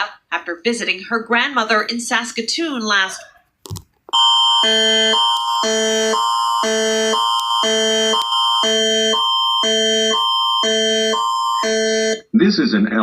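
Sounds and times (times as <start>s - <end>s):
electronic alert alarm tone: 4.1s - 12.2s.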